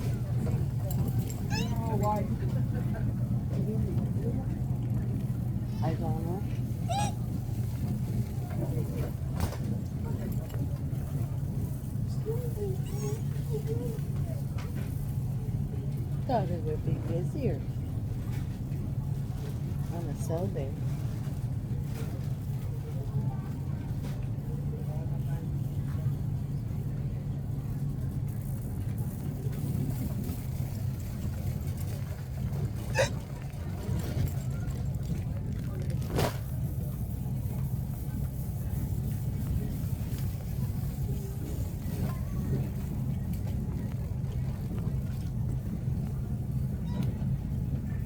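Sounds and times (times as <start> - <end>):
shopping cart wheels rumbling: 27.6 - 48.0
faint rattles and clicks: 27.9 - 46.4.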